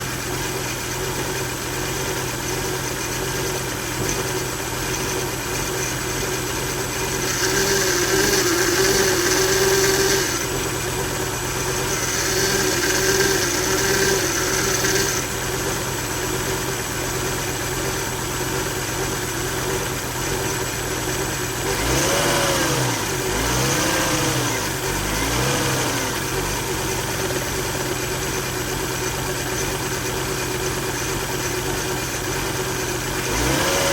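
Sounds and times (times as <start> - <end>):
car engine idling roughly: 0.0 - 33.9
car engine revving: 4.0 - 15.9, 20.6 - 28.2, 30.4 - 33.9.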